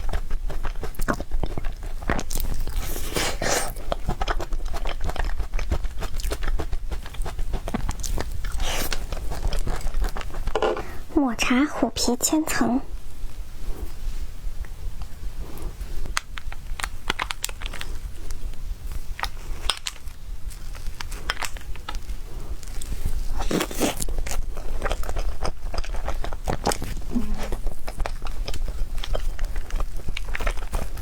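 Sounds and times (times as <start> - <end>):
sticky biting and chewing: 0.0 - 10.6, 19.1 - 31.0
steady low hum: 0.0 - 31.0.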